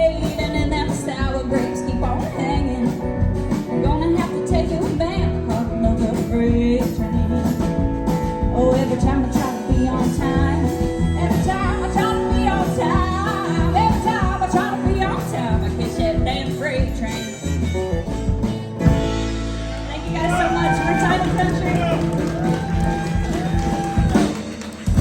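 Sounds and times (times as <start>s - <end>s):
country band playing: 0.0s - 25.0s.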